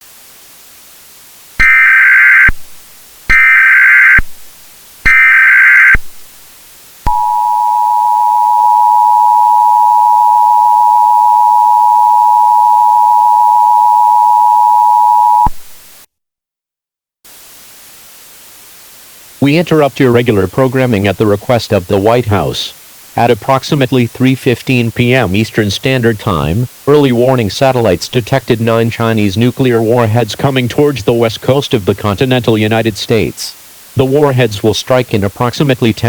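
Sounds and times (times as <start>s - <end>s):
faint hiss: 0.0s - 7.5s, 17.3s - 36.0s
screeching data tones: 1.6s - 2.6s, 3.3s - 4.3s, 5.1s - 6.0s, 7.1s - 15.5s
two-tone attention signal: 7.1s - 15.5s.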